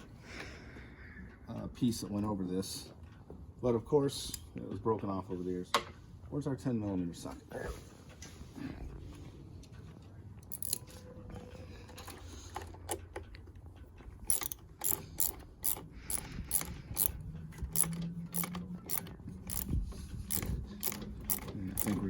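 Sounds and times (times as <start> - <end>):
hand ratchet clicking: 10.4 - 10.9, 14.0 - 22.0.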